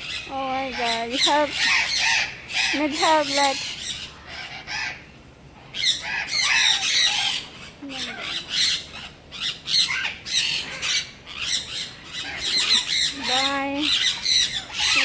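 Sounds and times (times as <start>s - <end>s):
parrots squawking: 0.0s - 5.1s, 5.7s - 15.0s.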